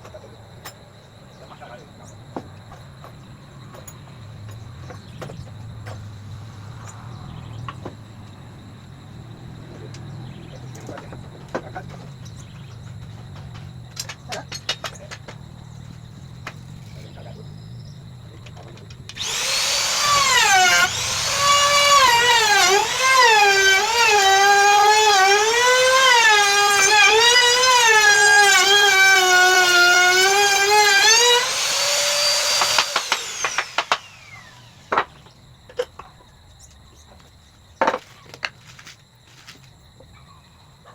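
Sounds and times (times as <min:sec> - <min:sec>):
electric drill whining in wood: 0:19.2 - 0:35.3.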